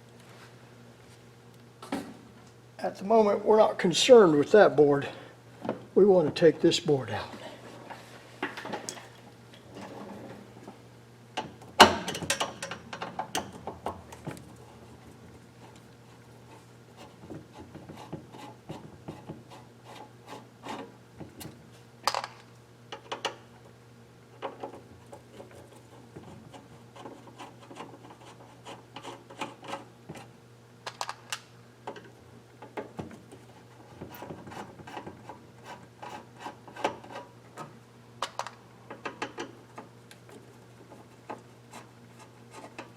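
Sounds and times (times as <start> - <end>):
steady low hum: 0.0 - 42.9
small clicks and scrapes: 24.3 - 30.3, 30.9 - 42.9.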